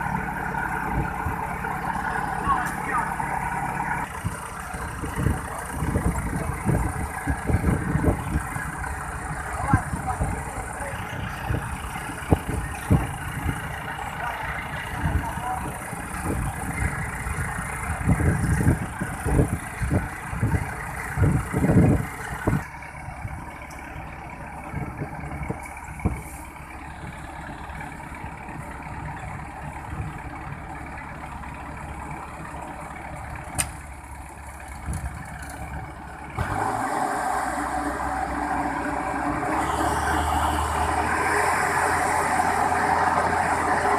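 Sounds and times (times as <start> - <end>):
heavy diesel machinery running: 0.0 - 43.9.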